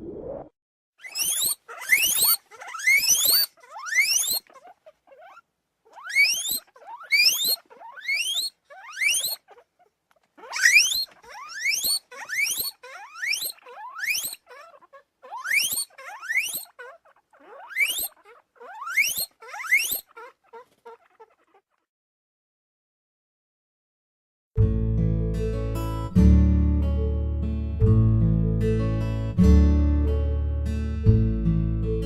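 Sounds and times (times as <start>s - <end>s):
guinea pig squealing: 1.0s - 21.9s.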